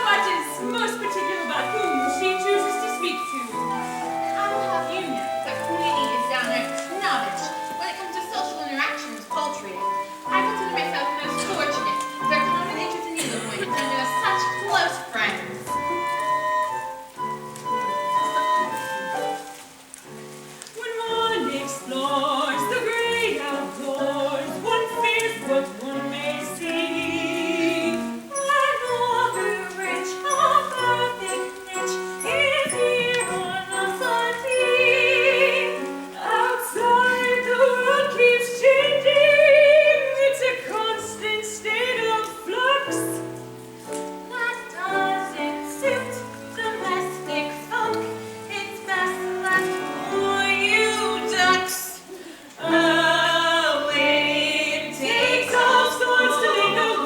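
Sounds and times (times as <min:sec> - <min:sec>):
instrumental accompaniment: 0:00.0 - 0:57.0
voices singing a show tune: 0:20.8 - 0:42.0, 0:44.4 - 0:57.0.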